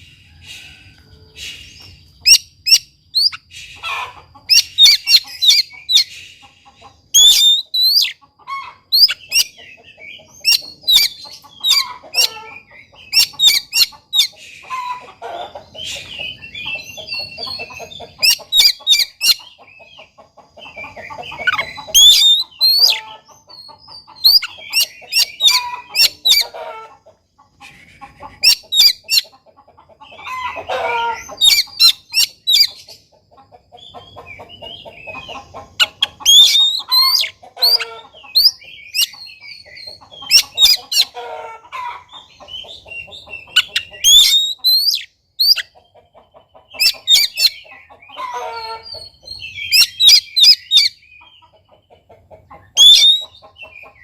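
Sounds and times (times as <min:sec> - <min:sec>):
songbird singing: 0:00.0 - 0:54.0.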